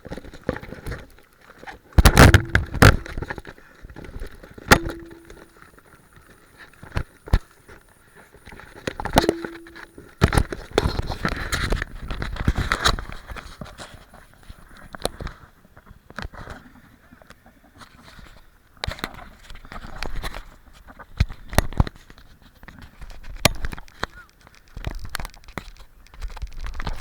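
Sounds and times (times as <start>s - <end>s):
gun handling clicks and knocks: 2.0s - 3.2s, 4.7s - 5.6s, 9.1s - 10.5s.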